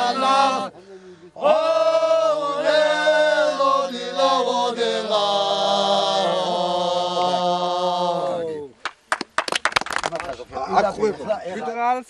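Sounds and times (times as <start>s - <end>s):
voices singing in close harmony: 0.0s - 0.8s, 1.4s - 8.8s
low vocal drone: 1.4s - 8.7s.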